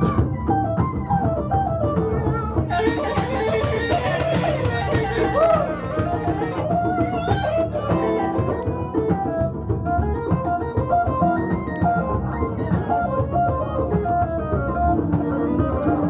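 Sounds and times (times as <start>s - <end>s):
band playing: 2.7s - 9.4s
electric guitar melodic runs: 2.7s - 16.0s.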